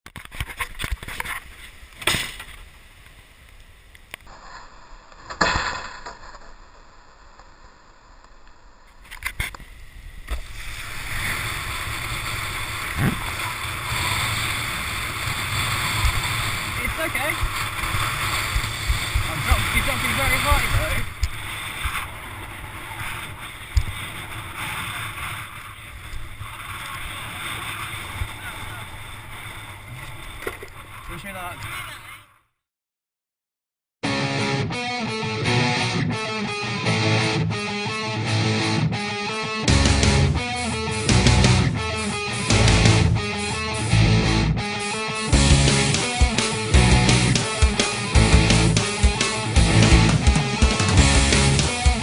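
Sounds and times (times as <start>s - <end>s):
wind on microphone: 9.8s - 30.0s.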